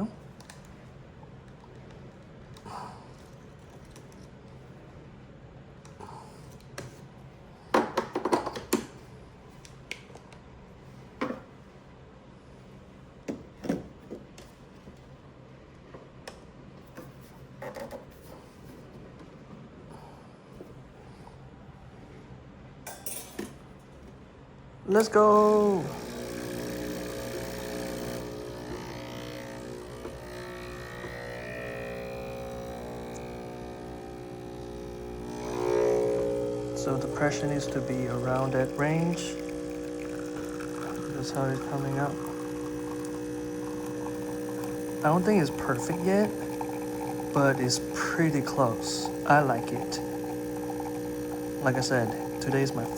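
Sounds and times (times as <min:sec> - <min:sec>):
low steady hum: 0:22.9 - 0:52.9.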